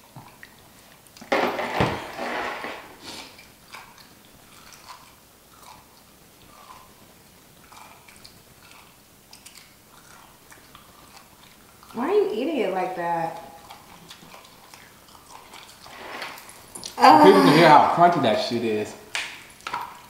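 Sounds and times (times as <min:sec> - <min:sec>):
chewing: 0:00.0 - 0:01.3, 0:03.1 - 0:12.0, 0:13.3 - 0:17.0, 0:19.4 - 0:20.0.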